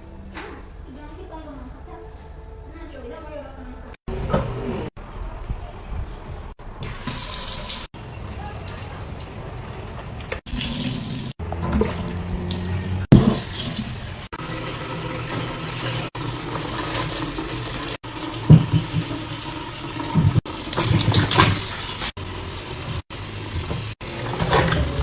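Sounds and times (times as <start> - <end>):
running water splashing: 6.8 - 8.0, 10.4 - 12.5, 13.1 - 25.0.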